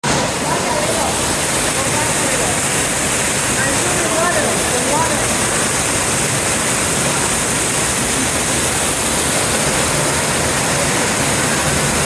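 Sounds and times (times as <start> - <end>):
waterfall roaring: 0.0 - 12.0.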